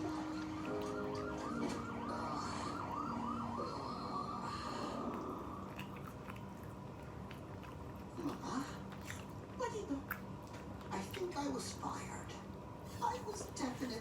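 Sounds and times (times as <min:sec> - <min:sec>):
cartoon siren yelping wail: 0:00.0 - 0:05.7.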